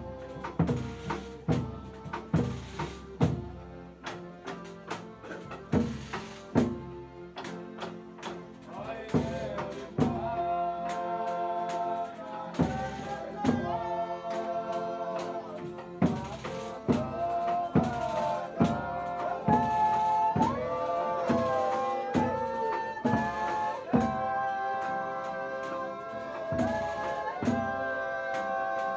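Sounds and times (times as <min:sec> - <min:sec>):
drum strokes: 0:00.0 - 0:28.9
person singing long sliding notes: 0:08.7 - 0:28.9.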